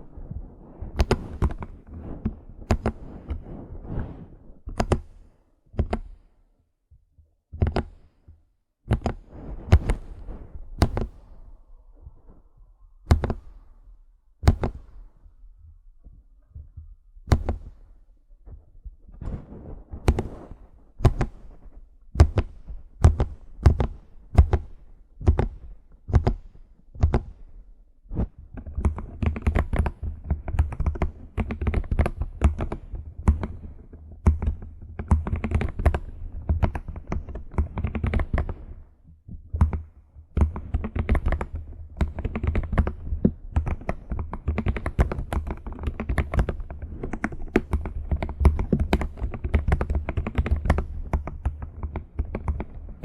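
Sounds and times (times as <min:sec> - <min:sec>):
keyboard typing: 0:01.0 - 0:03.4, 0:04.7 - 0:06.2, 0:07.6 - 0:08.1, 0:08.9 - 0:11.4, 0:13.1 - 0:13.6, 0:14.4 - 0:15.0, 0:17.3 - 0:17.8, 0:20.0 - 0:27.4, 0:28.2 - 0:38.7, 0:39.6 - 0:53.0.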